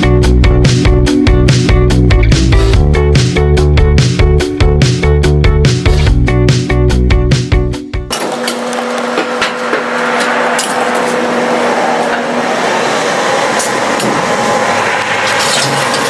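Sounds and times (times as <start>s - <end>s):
forge rushing noise: 8.1s - 16.0s.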